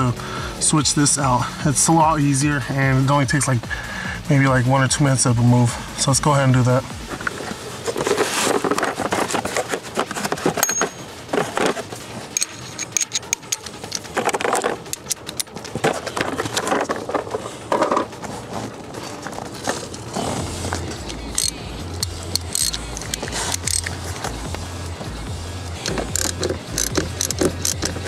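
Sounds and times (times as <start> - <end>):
rustling of parts handled: 7.1 - 24.6
hand tools clicking on metal: 10.0 - 18.1, 21.0 - 24.4, 25.8 - 28.0.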